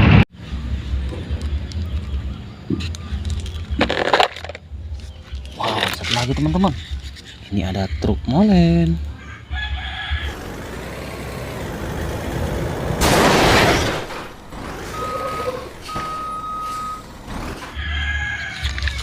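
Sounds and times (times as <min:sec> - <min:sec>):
electronic beeps: 0:14.8 - 0:17.1.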